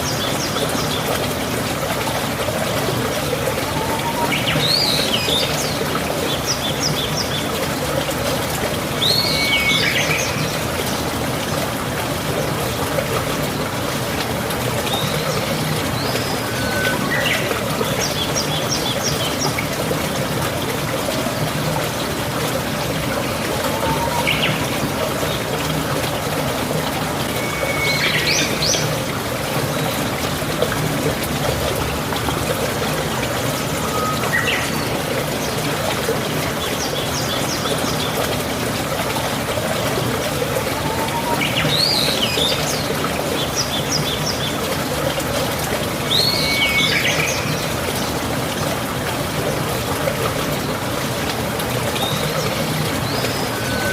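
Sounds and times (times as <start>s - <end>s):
birds chirping: 23.1s - 25.5s.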